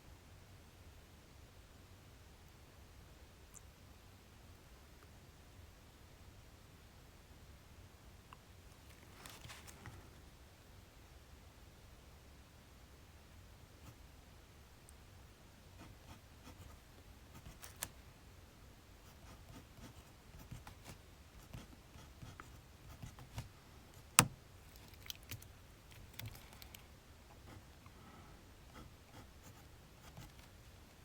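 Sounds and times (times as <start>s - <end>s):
pen scratching on paper: 15.8s - 17.9s, 19.1s - 24.4s, 28.7s - 30.6s.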